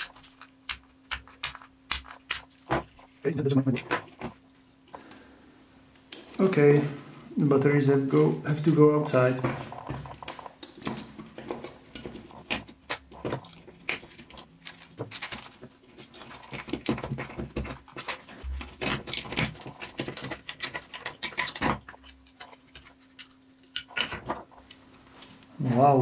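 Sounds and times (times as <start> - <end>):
plastic clicks and scrapes: 9.4 - 24.8.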